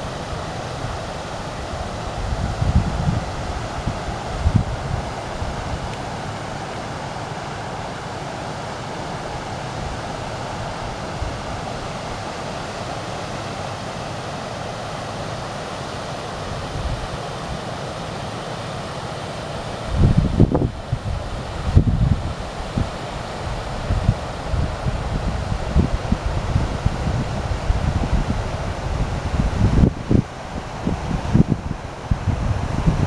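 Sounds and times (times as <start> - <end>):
wind buffeting microphone: 0.0 - 6.2, 19.6 - 33.0
river water flowing: 0.0 - 33.0.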